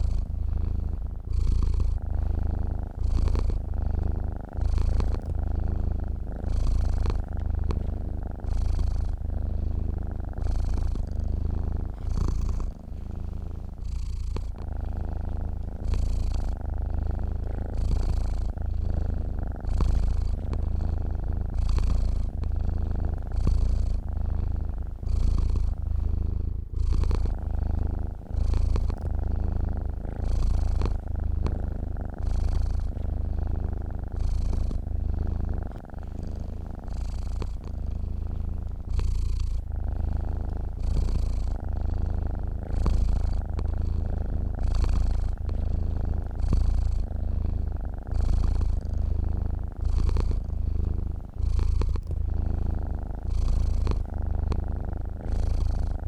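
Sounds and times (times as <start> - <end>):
cat purring: 0.0 - 56.0.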